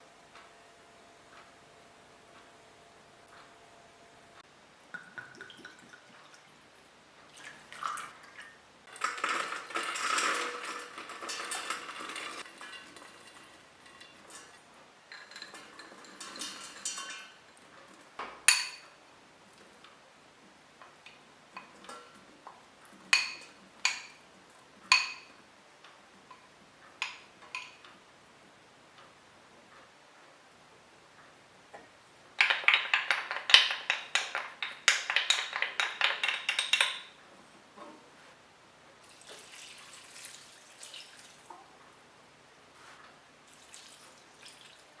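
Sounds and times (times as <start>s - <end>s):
rustling and scraping: 8.9s - 18.4s, 42.7s - 43.2s
utensils clinking against dishes: 8.9s - 19.0s, 23.1s - 24.2s, 24.9s - 25.4s, 27.0s - 27.8s, 32.4s - 37.2s.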